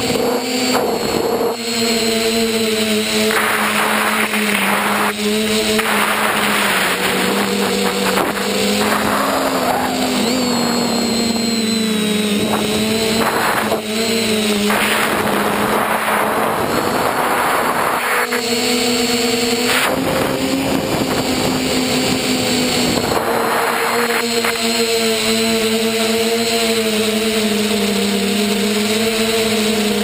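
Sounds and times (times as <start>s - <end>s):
electric motor and propeller whine: 0.0s - 30.0s
rushing air noise: 3.3s - 18.4s.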